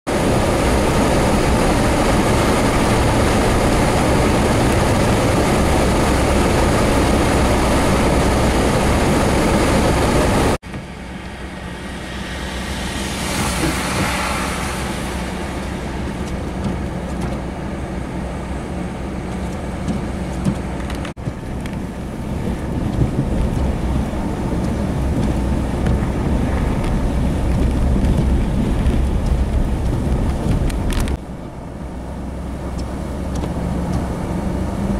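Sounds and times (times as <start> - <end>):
passing traffic road noise: 0.1 - 34.9
vehicle tyre hiss: 10.9 - 17.2
wind blowing on microphone: 11.7 - 18.2, 19.4 - 34.9.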